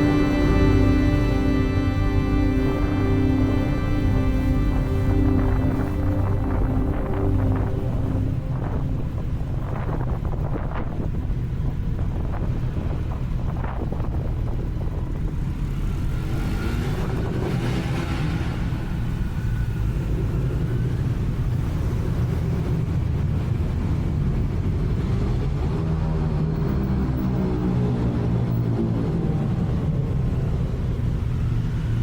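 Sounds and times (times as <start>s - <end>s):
wind noise on microphone: 0.0s - 19.6s.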